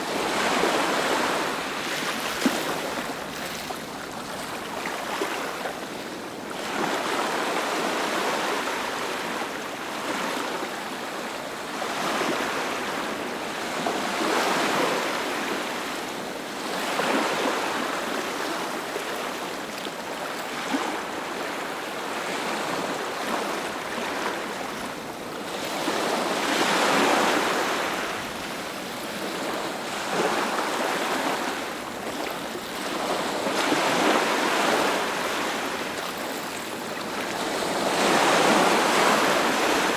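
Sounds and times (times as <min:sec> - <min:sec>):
ocean waves breaking: 0:00.0 - 0:06.0, 0:22.3 - 0:39.9.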